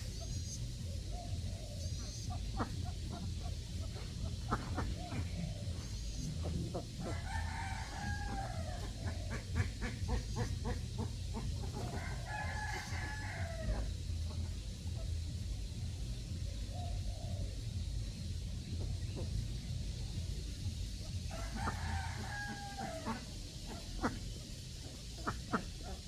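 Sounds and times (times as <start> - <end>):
steady low rumble: 0.0 - 26.0
rooster crowing: 7.0 - 9.1, 11.9 - 14.0, 21.3 - 23.3.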